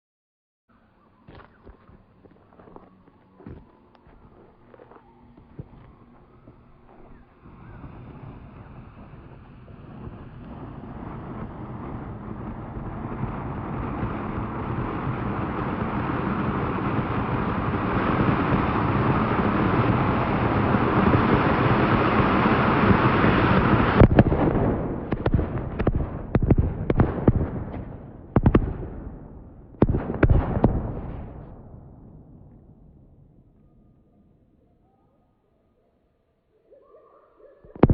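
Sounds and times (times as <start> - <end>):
firecrackers banging: 5.4 - 33.2
firework fountain hissing: 7.0 - 26.9.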